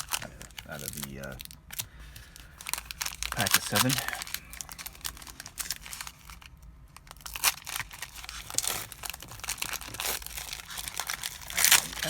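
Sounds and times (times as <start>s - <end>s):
trading cards being handled: 0.0s - 6.6s
foil wrapper crinkling: 0.0s - 12.0s.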